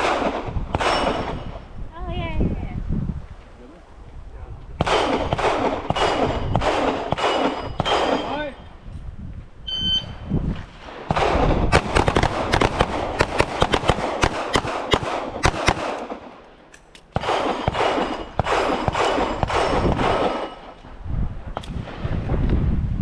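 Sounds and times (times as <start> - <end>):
handguns firing: 4.8 - 8.3, 11.1 - 20.8
short beep: 9.7 - 10.2.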